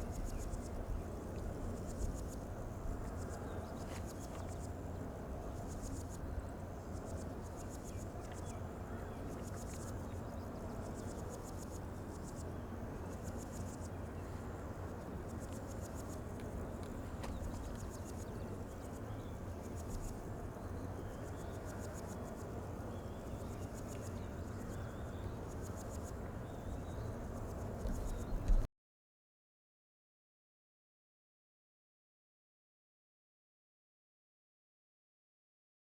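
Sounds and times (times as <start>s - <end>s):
insects trilling in pulsed bursts: 0.0s - 28.7s.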